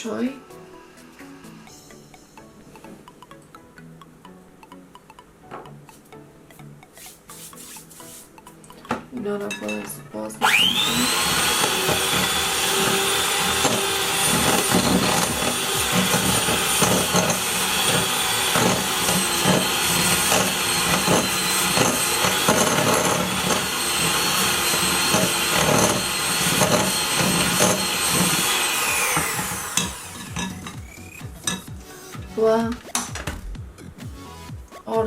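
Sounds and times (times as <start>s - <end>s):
electric hand mixer running: 10.4s - 31.7s.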